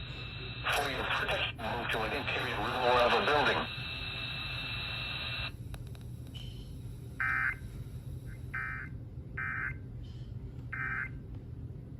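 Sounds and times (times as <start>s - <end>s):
steady radio tone: 0.0s - 5.5s.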